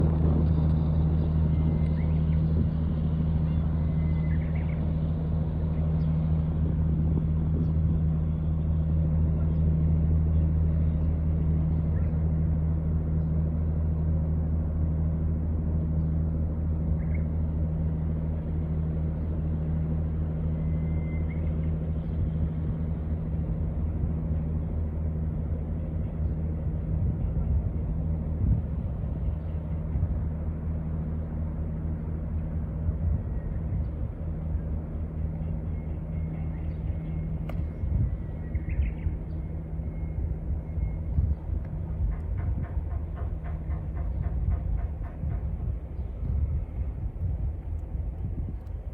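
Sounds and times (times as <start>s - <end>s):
boat engines droning: 0.0s - 48.9s.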